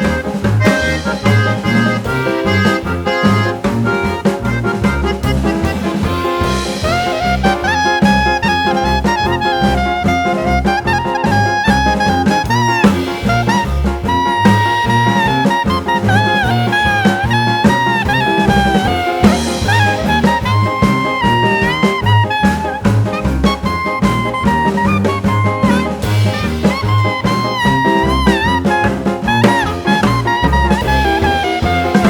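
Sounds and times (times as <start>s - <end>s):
swing jazz music: 0.0s - 32.0s.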